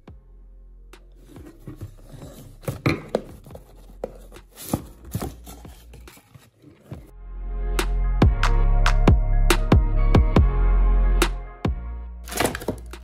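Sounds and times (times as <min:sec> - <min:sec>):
packaging knocks and scrapes: 0:01.2 - 0:07.1, 0:12.3 - 0:13.0.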